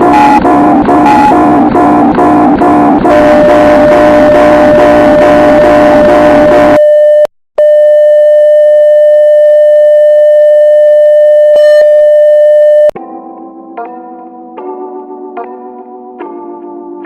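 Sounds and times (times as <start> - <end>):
electronic emergency alert tone: 0.0 - 12.9.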